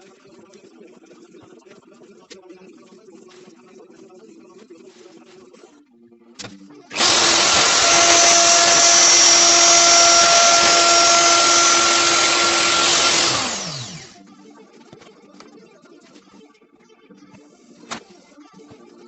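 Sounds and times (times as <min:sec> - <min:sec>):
electric power tool motor: 0:06.9 - 0:14.2.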